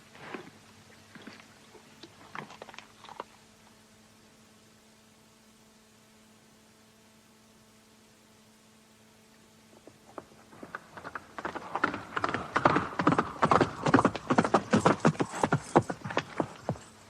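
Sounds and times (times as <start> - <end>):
horses' hooves clattering: 9.8 - 17.0.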